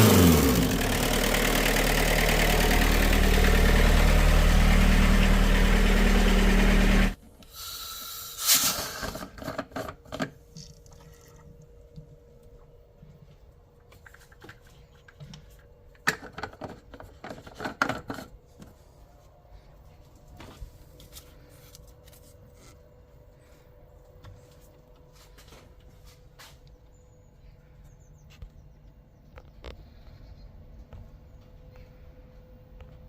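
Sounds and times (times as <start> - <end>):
diesel engine idling: 0.0 - 7.2
short hiss: 7.5 - 9.2
clatter of things being handled: 13.8 - 18.8.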